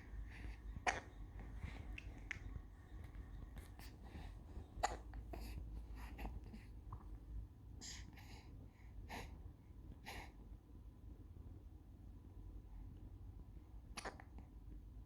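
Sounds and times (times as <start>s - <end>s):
baby hiccuping: 4.8s - 5.1s.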